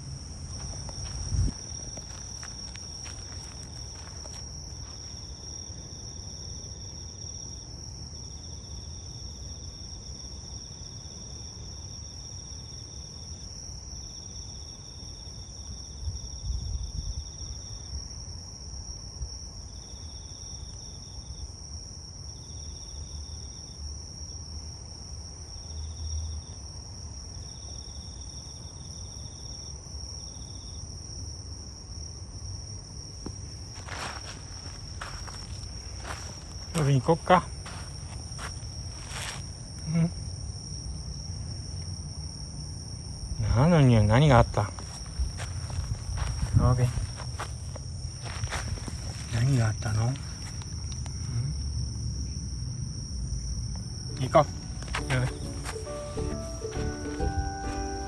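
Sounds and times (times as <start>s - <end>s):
insect high steady trill: 0.0s - 18.2s, 32.5s - 58.0s
insect lower trill: 49.1s - 58.0s.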